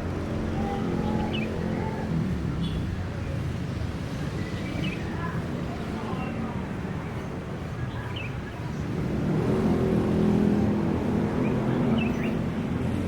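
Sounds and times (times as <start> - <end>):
vehicle engine passing by: 8.9 - 13.0.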